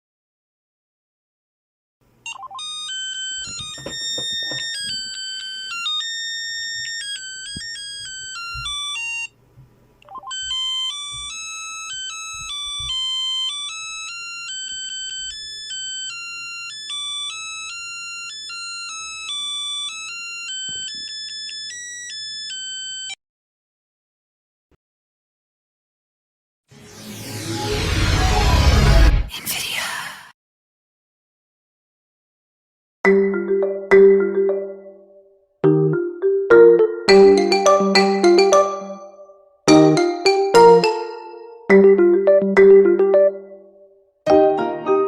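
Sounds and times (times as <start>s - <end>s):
smartphone ringtone melody: 2.3s - 9.3s, 10.1s - 23.2s, 33.1s - 45.0s
rising electronic swoop: 26.7s - 29.3s.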